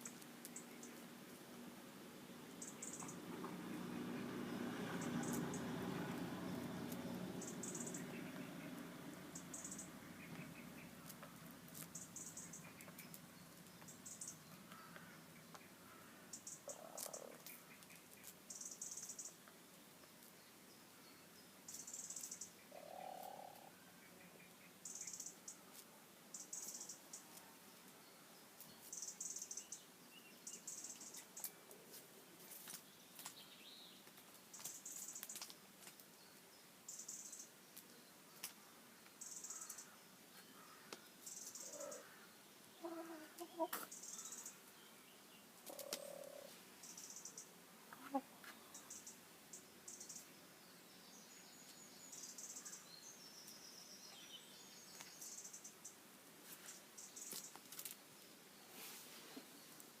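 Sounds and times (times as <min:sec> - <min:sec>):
faint high-pitched chirping: 0:02.5 - 0:03.4, 0:07.4 - 0:19.5, 0:20.2 - 0:35.5, 0:36.1 - 0:56.0
chickens clucking: 0:42.8 - 0:43.9, 0:47.9 - 0:48.4.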